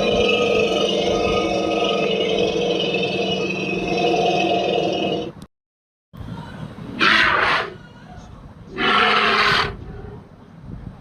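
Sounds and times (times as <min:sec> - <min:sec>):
low rumble: 0:00.0 - 0:05.4
creature call: 0:07.0 - 0:07.8, 0:08.7 - 0:09.8.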